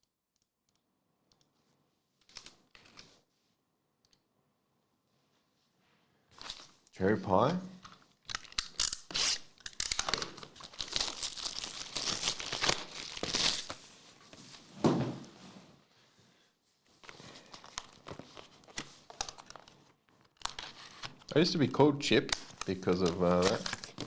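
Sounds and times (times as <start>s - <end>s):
plastic wrapping crinkling: 6.4s - 14.5s, 17.1s - 24.0s.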